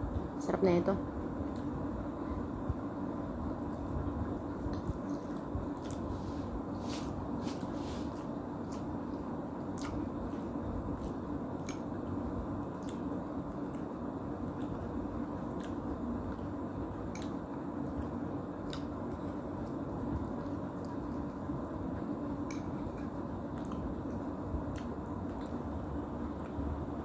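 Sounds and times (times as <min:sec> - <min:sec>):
person chewing noodles: 0:04.5 - 0:21.8.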